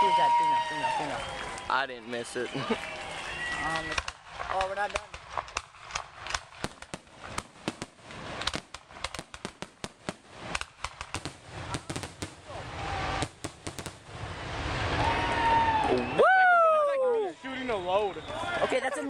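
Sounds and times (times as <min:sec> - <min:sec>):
fireworks bangs and crackles: 0:00.0 - 0:15.9
low rumble: 0:12.4 - 0:16.1.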